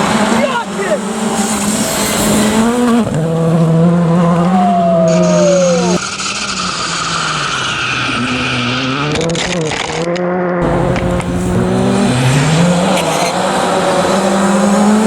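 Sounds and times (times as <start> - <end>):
rally car engines revving: 0.0 - 15.0
falling whistle: 4.5 - 6.0
car engine running steadily: 10.6 - 15.0.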